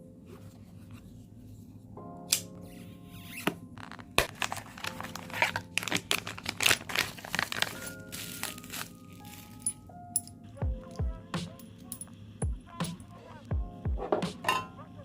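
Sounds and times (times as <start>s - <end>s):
background music: 0.0s - 15.0s
packaging crinkling and rustling: 3.8s - 9.7s.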